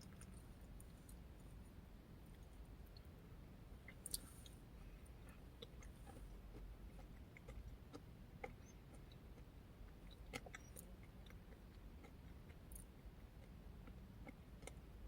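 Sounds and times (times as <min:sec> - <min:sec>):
chewing with mouth clicks: 0:00.0 - 0:01.2, 0:05.2 - 0:14.9.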